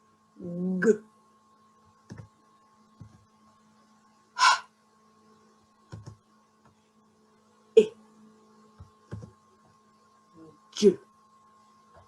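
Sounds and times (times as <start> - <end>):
person making breathy h sound: 4.4 - 4.7.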